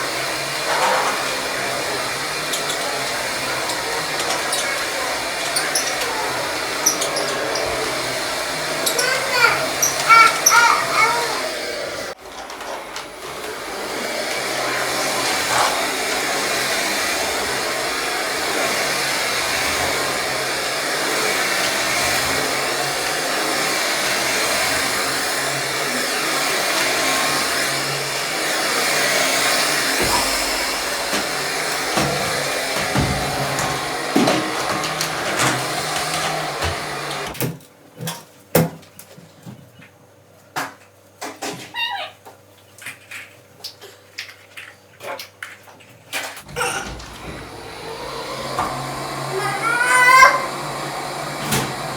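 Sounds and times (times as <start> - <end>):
vacuum cleaner running: 0.0 - 37.5, 46.4 - 51.9.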